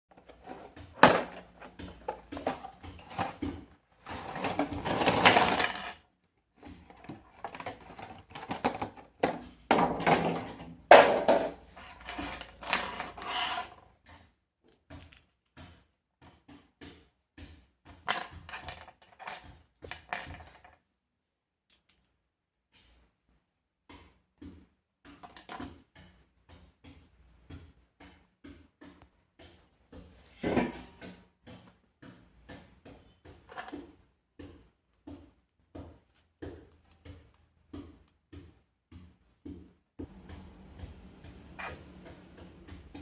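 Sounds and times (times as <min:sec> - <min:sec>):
small objects clicking and tapping: 0:00.2 - 0:20.8, 0:21.6 - 0:23.0, 0:23.8 - 0:30.2, 0:30.8 - 0:43.0
rustling or scraping: 0:11.7 - 0:13.9.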